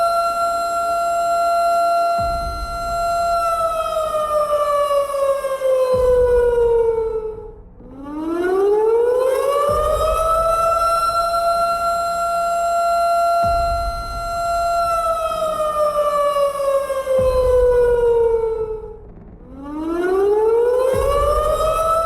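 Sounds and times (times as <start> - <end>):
warning siren: 0.0 - 22.0.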